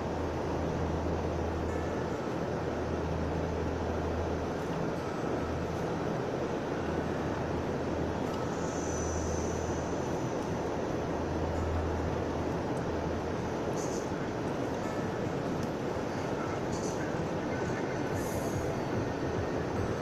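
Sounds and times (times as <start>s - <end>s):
vehicle road and engine noise: 0.0s - 20.0s
faint high whistle: 8.4s - 10.0s.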